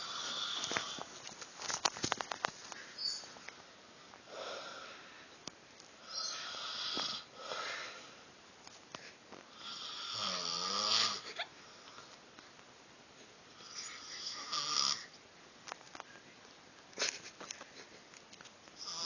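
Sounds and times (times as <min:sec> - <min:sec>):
man snoring wheezily: 0:06.0 - 0:07.6, 0:09.5 - 0:11.3, 0:13.5 - 0:15.1, 0:18.8 - 0:19.0.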